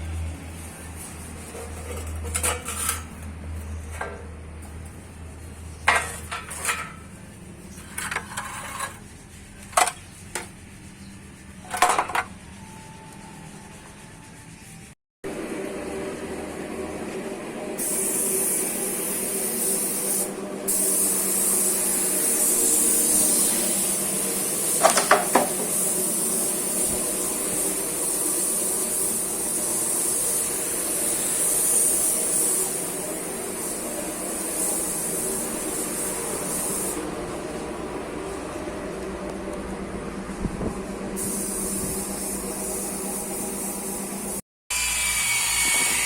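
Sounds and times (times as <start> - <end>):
steady mechanical hum: 0.0 - 46.0
spray gun hissing: 17.8 - 37.1, 41.2 - 44.4.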